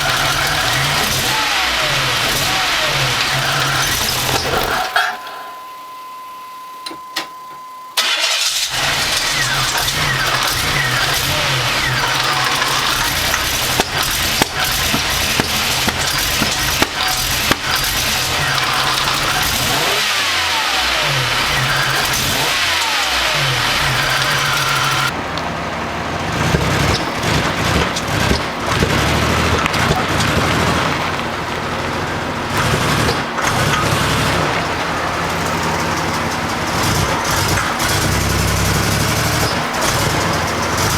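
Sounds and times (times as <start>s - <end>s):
car engine starting and revving: 0.0s - 5.0s, 8.0s - 40.9s
engine backfire pops: 0.0s - 5.2s, 8.0s - 25.5s, 26.3s - 40.9s
steady beep: 3.4s - 8.0s.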